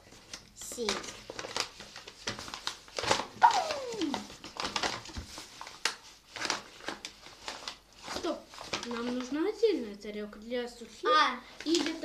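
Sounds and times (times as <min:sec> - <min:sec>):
cat meowing: 0:03.4 - 0:04.2.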